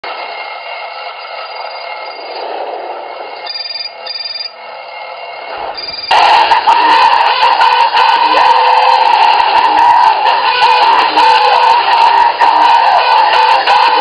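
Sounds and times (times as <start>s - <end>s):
short beeps: 3.4s - 4.5s
electronic alarm ringing: 3.4s - 4.6s, 5.8s - 6.3s
loud musical alarm: 3.4s - 14.0s.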